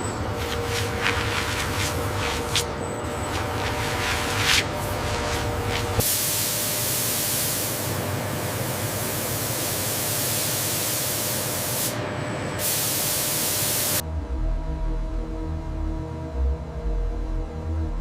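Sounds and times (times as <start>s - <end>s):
loud steady spray hiss: 5.8s - 12.0s, 12.6s - 14.0s
music with deep low notes: 14.0s - 18.0s.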